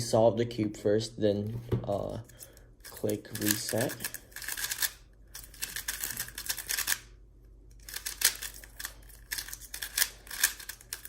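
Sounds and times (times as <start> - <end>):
plastic puzzle cube clicking: 2.9 - 7.1, 7.8 - 11.0.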